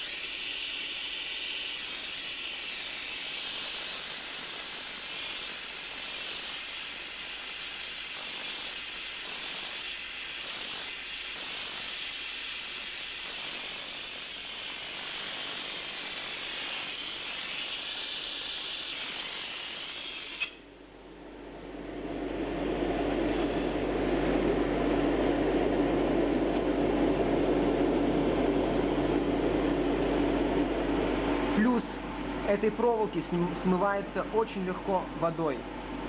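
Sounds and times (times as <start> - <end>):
gas torch flame hissing: 0.0 - 20.6
torch shutoff click: 7.8 - 20.6.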